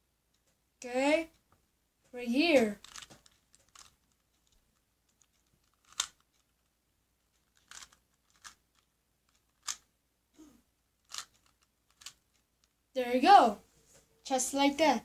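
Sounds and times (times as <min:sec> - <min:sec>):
puzzle cube plastic clicks: 0:02.7 - 0:06.7, 0:07.3 - 0:09.9, 0:11.0 - 0:12.8.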